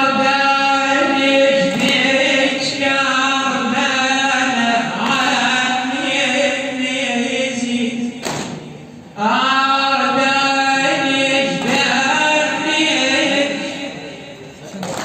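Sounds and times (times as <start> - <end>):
man chanting unaccompanied: 0.0 - 15.0.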